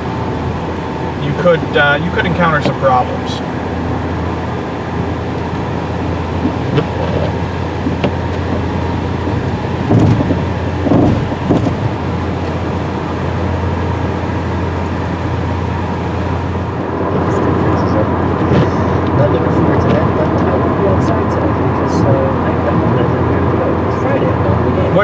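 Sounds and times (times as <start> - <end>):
car engine and road drone: 0.0 - 25.0.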